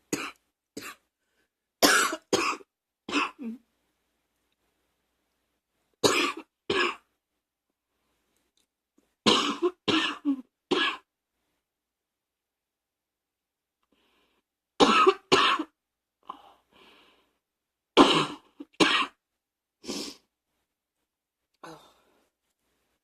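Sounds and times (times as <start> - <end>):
person coughing: 1.8 - 3.6, 6.0 - 7.0, 9.3 - 11.1, 14.8 - 15.7, 18.0 - 19.2.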